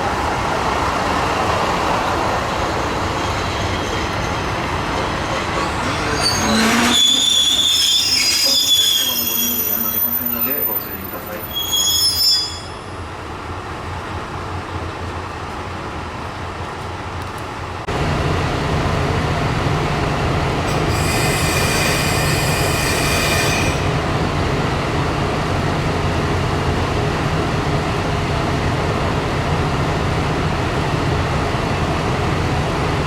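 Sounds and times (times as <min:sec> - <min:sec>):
diesel railcar engine drone: 0:00.0 - 0:33.0
train wheels squealing: 0:02.8 - 0:13.1, 0:20.7 - 0:24.0.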